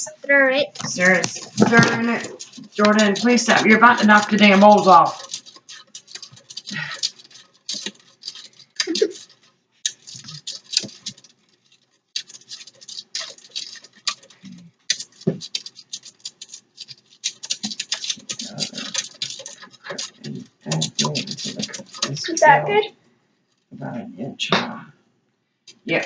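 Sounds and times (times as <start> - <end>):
plastic spoon stirring in bowl: 0.0 - 23.0.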